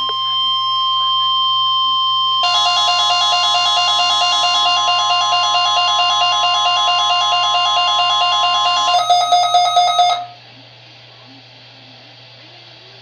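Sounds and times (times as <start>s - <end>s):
loud steady alarm tone: 0.0s - 10.4s
faint radio static: 9.6s - 13.0s.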